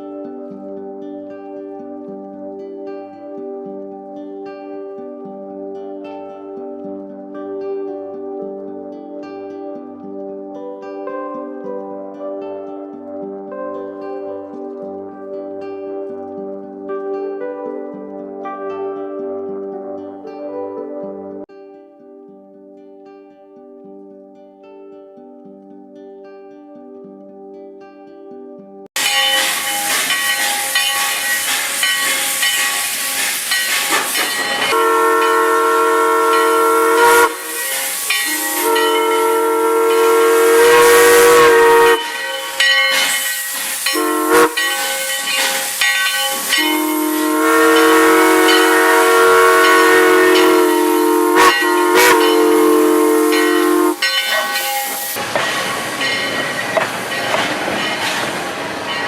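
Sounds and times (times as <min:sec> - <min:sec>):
train whistle blasts: 0:29.0 - 0:57.2
steady hiss: 0:29.0 - 0:59.0.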